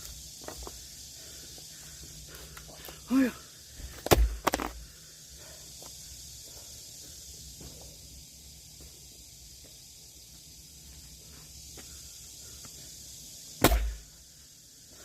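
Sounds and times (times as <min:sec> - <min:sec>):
faint outdoor hiss: 0:00.0 - 0:15.0
axe splitting firewood crack: 0:04.0 - 0:04.8, 0:13.6 - 0:14.0.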